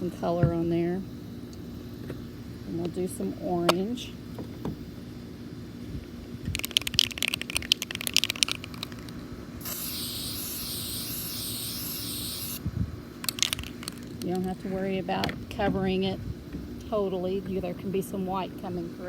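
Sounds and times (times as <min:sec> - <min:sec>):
spray can ball rattling: 0:06.5 - 0:12.6, 0:13.2 - 0:14.3
spray paint hissing: 0:09.6 - 0:12.6.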